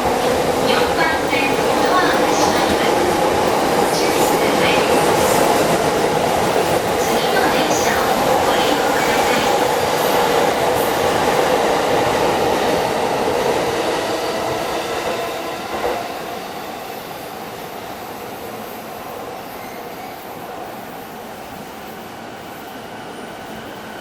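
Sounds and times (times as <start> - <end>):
electric train running: 0.0 - 14.1.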